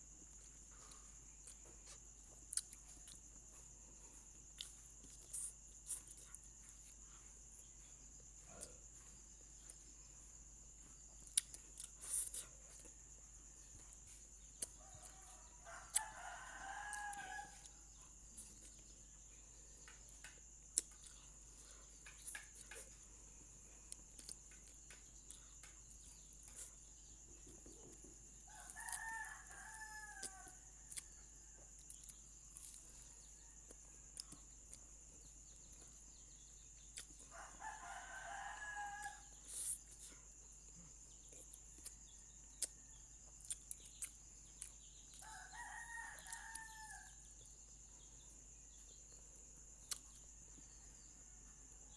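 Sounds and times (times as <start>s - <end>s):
faint rooster crowing: 12.7s - 18.8s, 25.2s - 34.6s, 37.1s - 41.2s, 41.8s - 48.4s, 50.3s - 51.9s.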